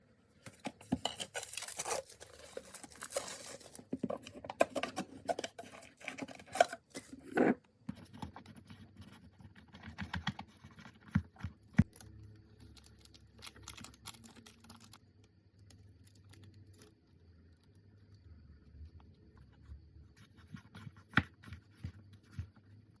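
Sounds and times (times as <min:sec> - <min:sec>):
containers clicking and scraping: 0:00.4 - 0:08.7
packaging tearing and crinkling: 0:01.1 - 0:04.3, 0:11.9 - 0:15.0.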